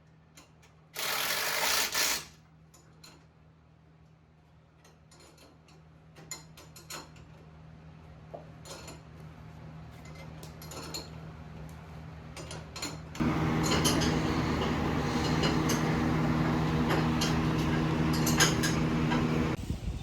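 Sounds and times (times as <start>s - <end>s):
loud motor drone: 13.2s - 19.6s
steady low hum: 13.2s - 19.7s.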